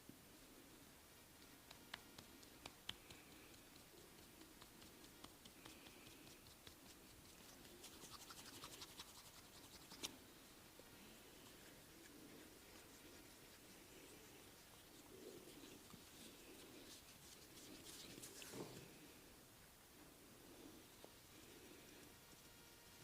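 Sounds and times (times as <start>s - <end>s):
crackles: 1.3s - 19.2s
hands rubbing skin and hair: 1.4s - 10.2s, 11.0s - 19.2s.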